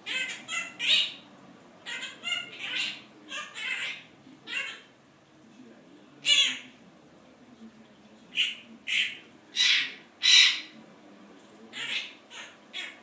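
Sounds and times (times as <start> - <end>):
parrot squawking harshly: 0.0 - 1.2, 1.8 - 4.9, 6.2 - 6.7, 8.3 - 10.8, 11.7 - 13.0.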